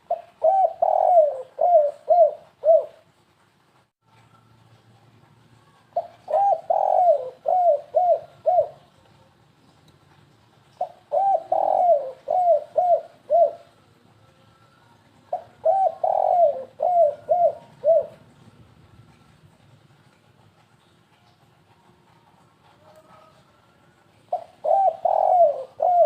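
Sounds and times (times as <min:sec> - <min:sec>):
dove cooing: 0:00.0 - 0:03.1, 0:06.0 - 0:09.0, 0:10.7 - 0:13.9, 0:15.2 - 0:18.5, 0:24.3 - 0:26.0.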